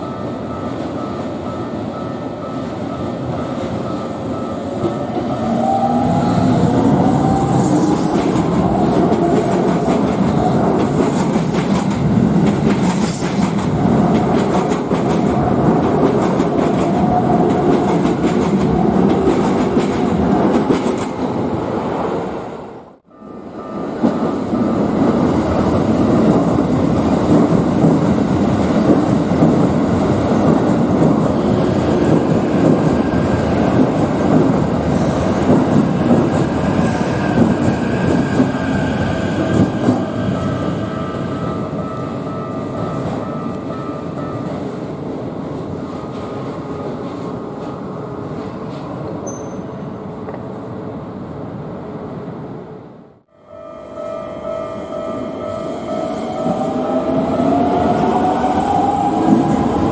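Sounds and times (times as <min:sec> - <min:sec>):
electric train wheels clattering: 0:04.8 - 0:21.4, 0:24.0 - 0:43.7, 0:54.6 - 0:59.9.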